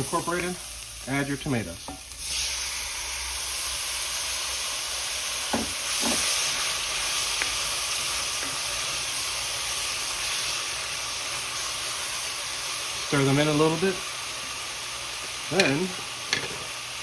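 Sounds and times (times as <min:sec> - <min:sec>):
paste sizzling in saucepan: 0:00.0 - 0:17.0.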